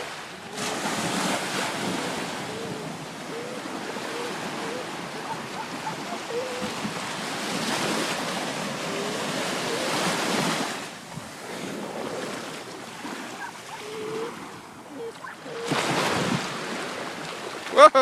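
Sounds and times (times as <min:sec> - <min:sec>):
ocean surf washing in: 0:00.0 - 0:18.0.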